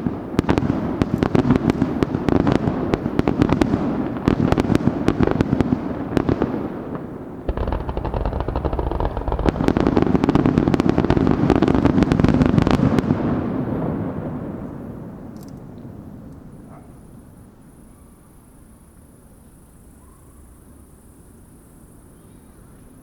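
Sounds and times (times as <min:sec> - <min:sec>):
fireworks bursts and crackles: 0:00.0 - 0:17.5.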